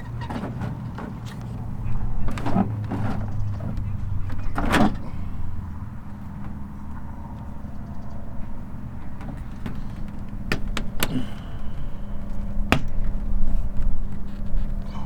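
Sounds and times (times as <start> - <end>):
low rumble and hum: 0.0 - 15.0.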